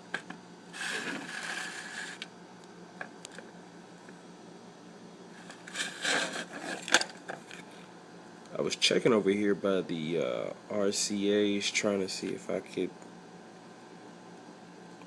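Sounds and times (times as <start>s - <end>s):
handling scrape: 0.7s - 2.3s, 5.4s - 7.0s.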